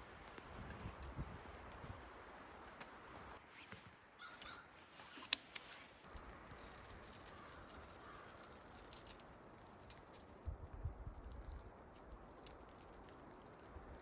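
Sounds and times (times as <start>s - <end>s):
faint bird cawing: 4.2s - 4.8s, 7.2s - 8.9s.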